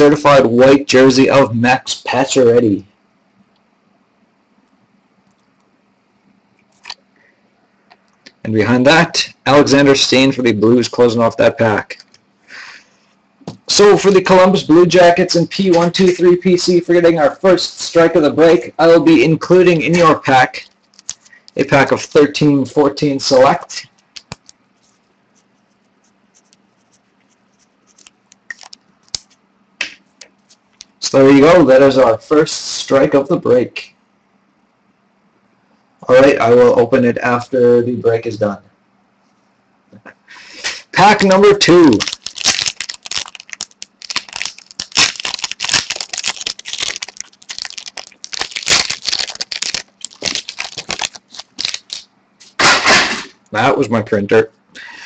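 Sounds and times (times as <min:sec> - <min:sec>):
low steady hum: 0:00.0 - 0:55.0
wrapper tearing and crinkling: 0:20.8 - 0:21.4, 0:27.6 - 0:29.4, 0:41.8 - 0:52.1
card pack clicks and rubs: 0:20.8 - 0:21.5, 0:24.0 - 0:29.4, 0:41.9 - 0:52.0.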